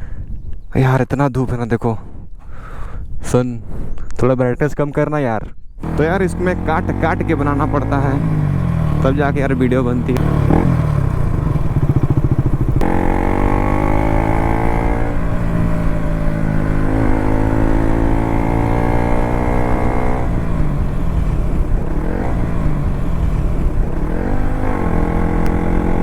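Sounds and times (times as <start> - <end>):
motorcycle engine running: 5.8 - 26.0.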